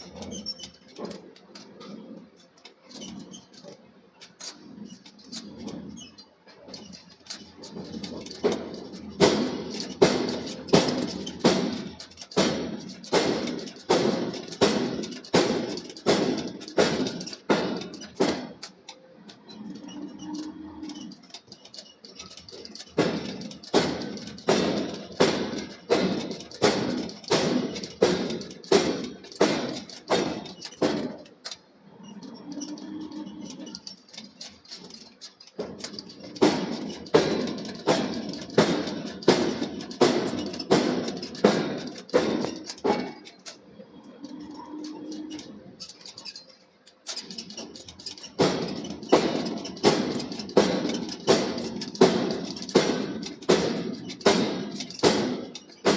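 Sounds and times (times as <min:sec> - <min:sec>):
forging hammer striking steel: 0:48.4 - 0:55.9.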